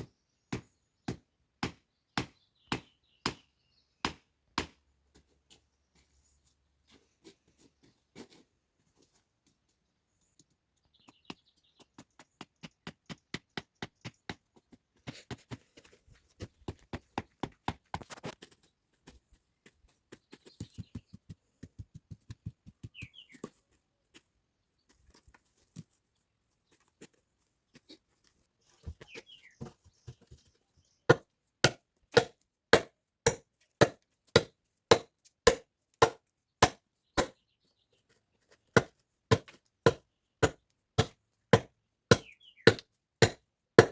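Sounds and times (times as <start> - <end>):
firewood being chopped: 0.0 - 3.4, 4.0 - 4.8, 31.1 - 37.4, 38.7 - 43.9.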